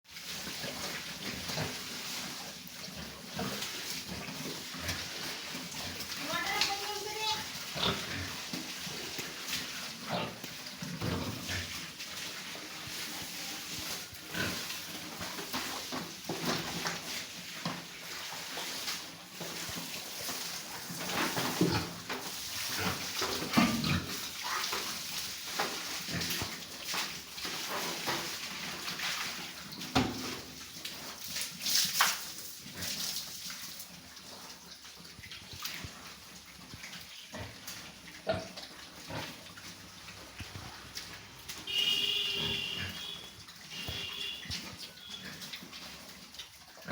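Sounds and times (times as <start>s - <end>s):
pigs in a pen: 0.0s - 46.9s
pigs grunting and squealing: 7.3s - 8.5s, 10.0s - 11.8s, 22.7s - 24.7s
pig call: 41.7s - 45.4s.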